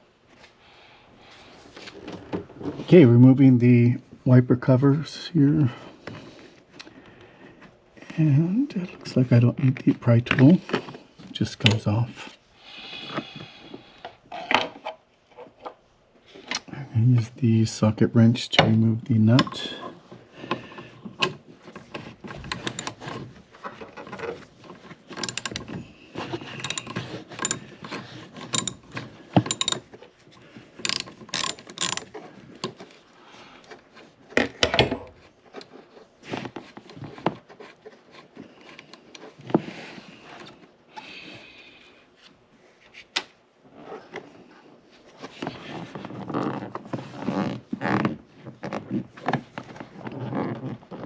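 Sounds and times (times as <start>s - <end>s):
tools and parts knocking: 22.3s - 23.2s, 25.1s - 30.0s, 30.8s - 32.8s
ratchet wrench clicking: 22.5s - 23.0s, 25.2s - 25.7s, 26.6s - 27.6s, 28.4s - 28.9s, 29.5s - 29.8s, 30.9s - 32.1s.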